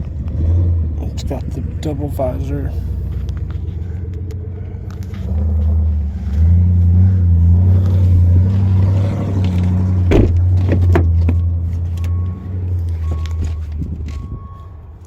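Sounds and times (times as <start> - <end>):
vehicle motor rumble: 0.0 - 15.0
sharp knocks: 10.1 - 11.4.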